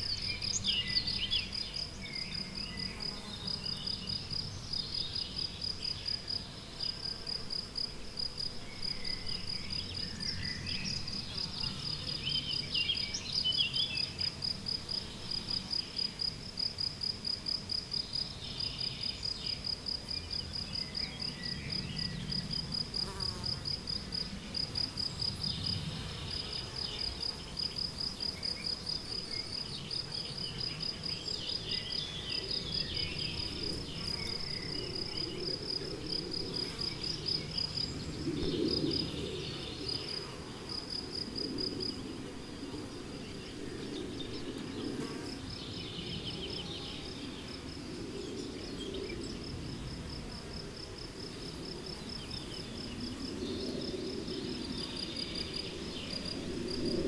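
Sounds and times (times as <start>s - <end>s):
songbirds singing: 0.0s - 7.0s, 8.5s - 16.4s, 24.0s - 40.7s, 41.8s - 49.9s
cricket chirping: 0.0s - 57.0s.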